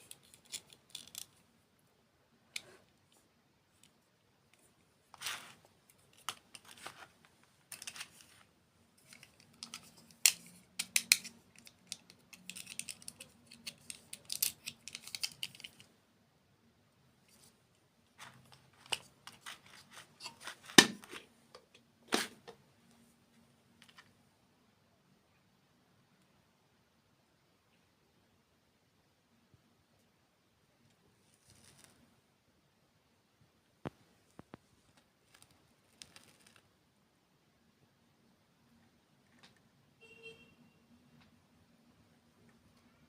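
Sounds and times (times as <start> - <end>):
small objects clicking and tapping: 0.0 - 1.4, 9.0 - 15.9.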